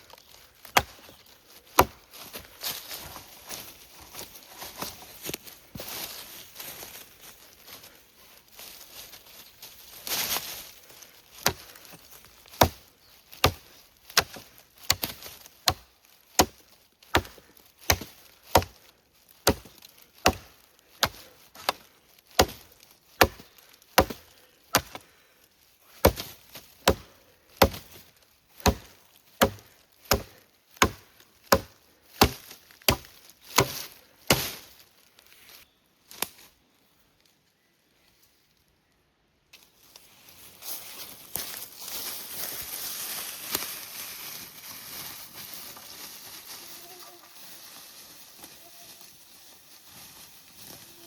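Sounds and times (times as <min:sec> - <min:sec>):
wood being chopped: 0:00.6 - 0:02.0, 0:11.4 - 0:11.7, 0:12.5 - 0:25.0, 0:26.0 - 0:28.0, 0:28.6 - 0:34.7.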